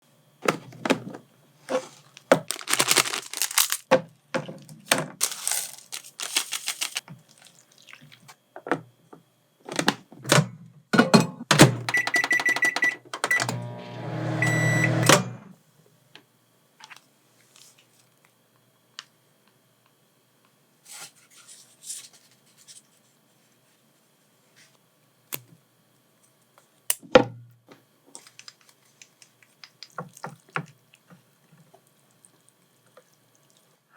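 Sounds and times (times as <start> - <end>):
packaging rustling: 1.7 - 3.9, 5.2 - 7.6
microwave low hum: 8.1 - 17.3
microwave keypad beeps: 11.8 - 13.6, 14.4 - 15.3.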